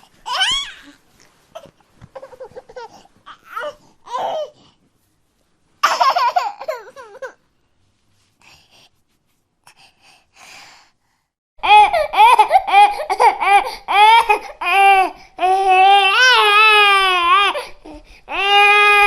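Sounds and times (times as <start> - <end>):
infant crying: 0.2 - 1.0, 1.6 - 4.6, 11.6 - 19.0.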